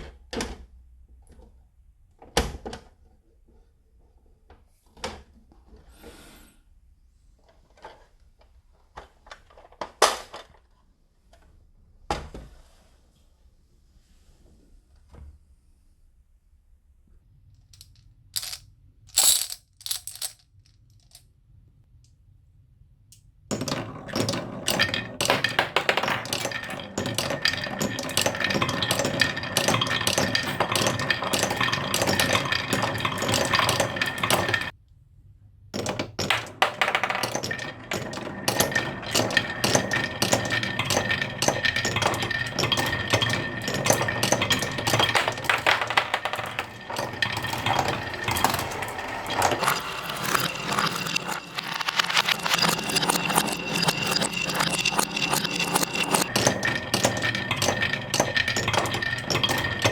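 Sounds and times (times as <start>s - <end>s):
marbles clattering down wooden run: 17.8s - 20.4s, 23.5s - 34.7s, 35.8s - 59.9s.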